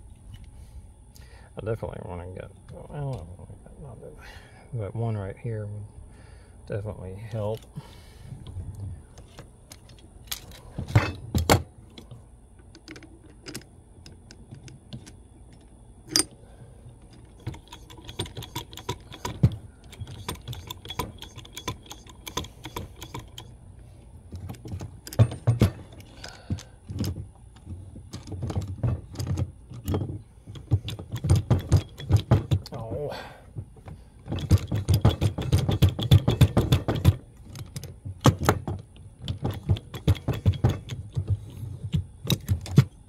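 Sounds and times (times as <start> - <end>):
metal tools clinking: 16.1 - 16.4.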